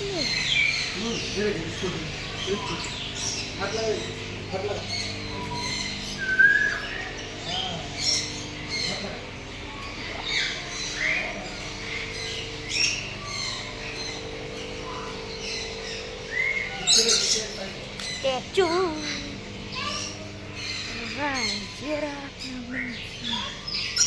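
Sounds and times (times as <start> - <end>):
birds squawking and chirping: 0.0 - 24.0.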